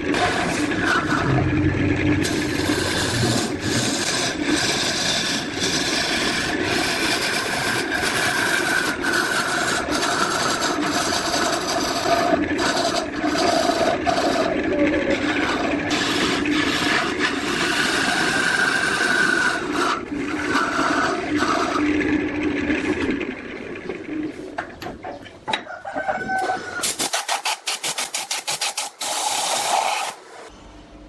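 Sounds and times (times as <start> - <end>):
tool rasping against spinning wood: 2.2 - 23.1.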